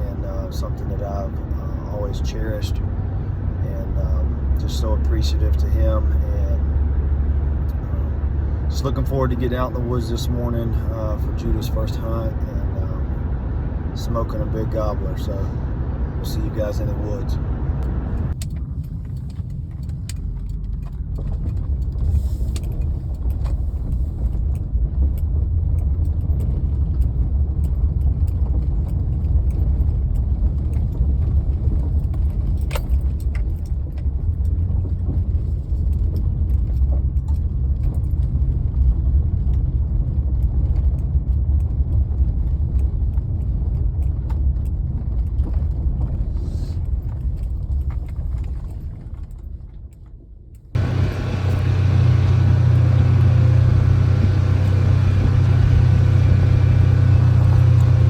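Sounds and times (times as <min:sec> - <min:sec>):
road and engine rumble in cabin: 0:00.0 - 0:58.0
faint clicks and rattles: 0:17.8 - 0:58.0.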